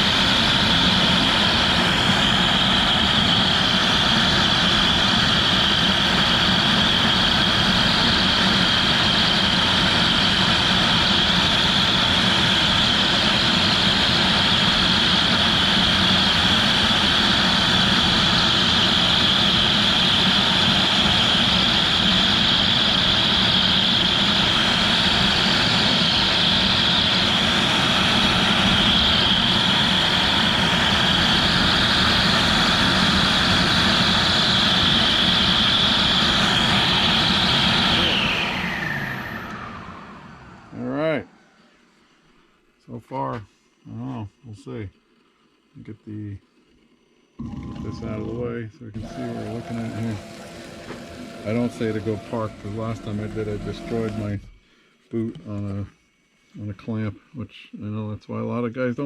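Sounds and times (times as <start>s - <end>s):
router spindle whining: 0.0s - 41.8s, 47.3s - 54.6s.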